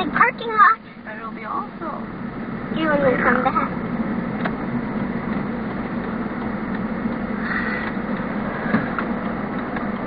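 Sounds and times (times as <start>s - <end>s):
car road and engine noise: 0.0s - 10.0s.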